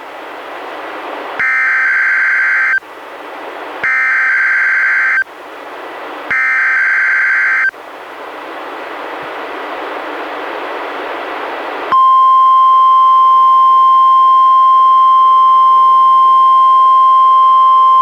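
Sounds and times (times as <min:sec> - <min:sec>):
buzzing digital data bursts: 0:01.4 - 0:02.8, 0:03.8 - 0:05.2, 0:06.3 - 0:07.7
radio static hiss: 0:01.4 - 0:02.8, 0:03.8 - 0:05.3, 0:06.3 - 0:07.7.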